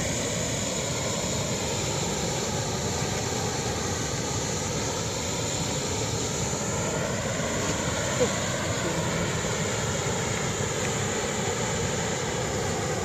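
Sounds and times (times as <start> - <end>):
waterfall roaring: 4.0 - 13.0.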